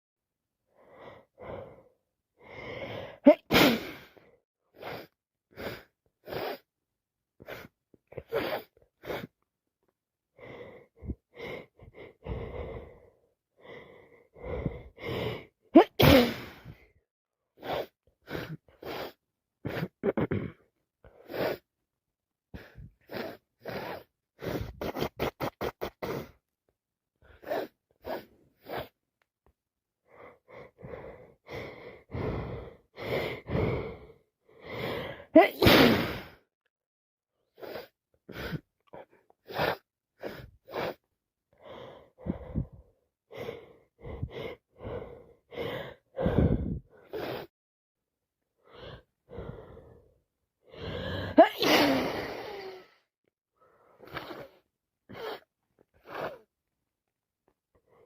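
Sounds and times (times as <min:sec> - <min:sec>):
gasping in-breaths: 0:00.7 - 0:06.7, 0:10.4 - 0:16.9, 0:30.0 - 0:35.5, 0:37.5 - 0:47.5, 0:48.6 - 0:56.5
woman sneezing: 0:03.3 - 0:04.0, 0:15.8 - 0:16.6, 0:35.4 - 0:36.3, 0:51.3 - 0:52.8.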